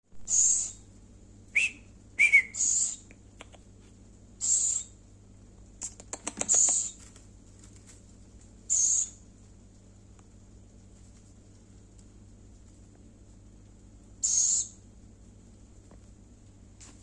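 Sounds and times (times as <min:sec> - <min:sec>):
owl hissing screeches: 0:00.3 - 0:00.8, 0:02.4 - 0:03.1, 0:04.4 - 0:04.9, 0:08.7 - 0:09.2, 0:14.2 - 0:14.8
quick run of clicks: 0:05.8 - 0:07.2.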